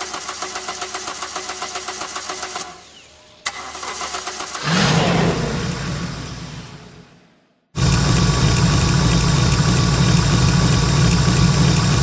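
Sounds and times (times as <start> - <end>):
car engine starter cranking: 0.0 - 2.8, 3.4 - 4.9
car engine running loudly: 7.8 - 12.0.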